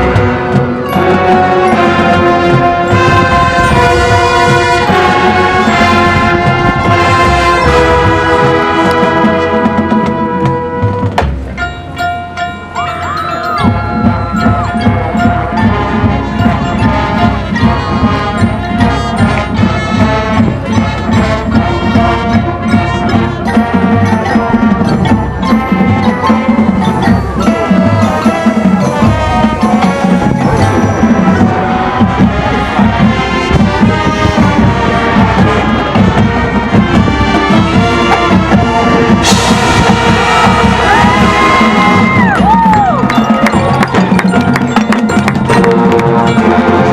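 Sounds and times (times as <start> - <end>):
drum strikes: 0.0 - 12.8, 13.4 - 46.9
mallet percussion: 0.0 - 46.9
marching band playing: 0.0 - 46.9
cymbal crash: 38.1 - 42.1.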